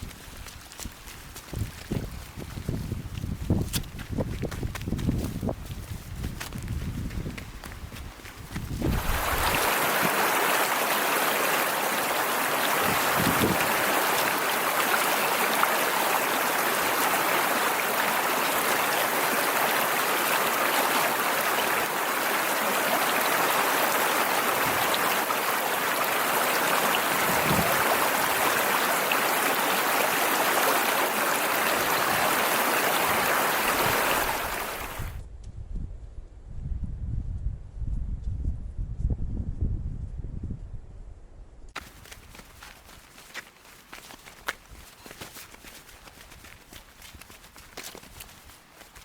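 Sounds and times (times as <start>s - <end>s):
rushing whitewater creek: 8.8s - 35.2s, 41.8s - 49.0s.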